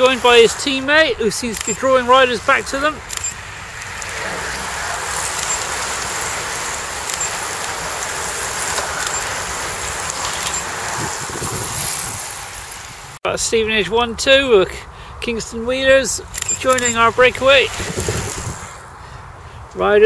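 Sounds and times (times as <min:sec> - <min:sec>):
freewheels whirring: 0:00.0 - 0:13.1, 0:16.3 - 0:18.9
bicycle tyres hissing on tarmac: 0:00.0 - 0:13.2, 0:17.0 - 0:19.6.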